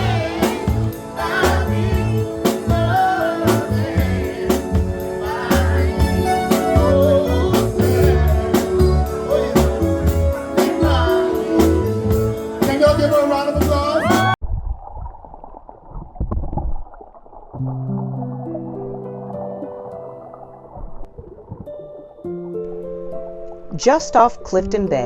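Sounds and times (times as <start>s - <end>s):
song with vocals and drums: 0.0s - 14.4s.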